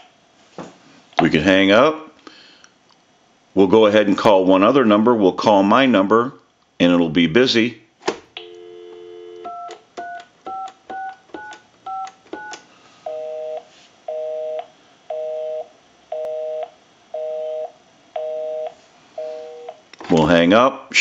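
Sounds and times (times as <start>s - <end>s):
telephone dial tone: 8.4s - 13.6s
telephone busy signal: 8.4s - 19.8s
touch-tone dialing beeps: 8.5s - 13.4s.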